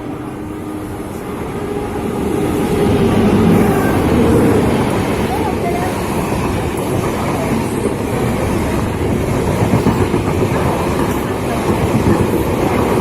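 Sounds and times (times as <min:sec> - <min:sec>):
train wheels rumbling on rails: 0:00.0 - 0:13.0.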